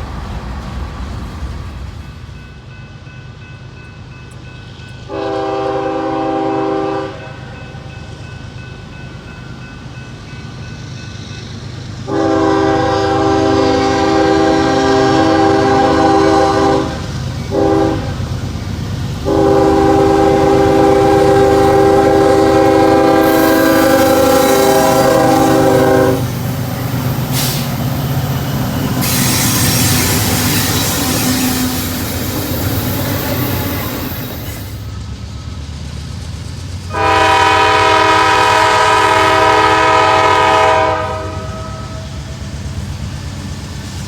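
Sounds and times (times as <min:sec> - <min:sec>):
passing train rumble: 0:00.0 - 0:44.0
rail and wheel hiss: 0:00.0 - 0:44.0
locomotive air horn blasts: 0:05.1 - 0:07.4, 0:12.1 - 0:18.2, 0:19.2 - 0:26.4, 0:36.9 - 0:42.2.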